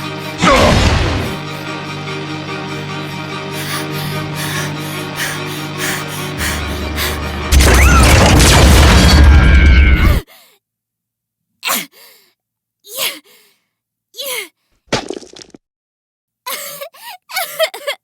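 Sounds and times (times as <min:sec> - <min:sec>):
dramatic film score: 0:00.0 - 0:10.2
person sighing breathily: 0:03.5 - 0:07.4, 0:11.6 - 0:13.6, 0:14.2 - 0:14.5.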